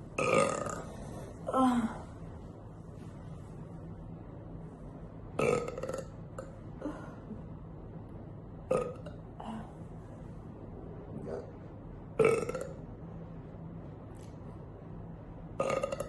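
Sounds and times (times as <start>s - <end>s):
woman burping: 0.2s - 0.8s, 12.2s - 12.8s.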